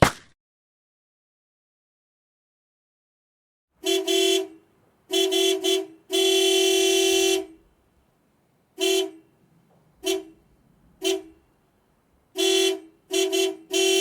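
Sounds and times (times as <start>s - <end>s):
car horn beeps and honks: 3.8s - 8.0s, 8.7s - 14.0s.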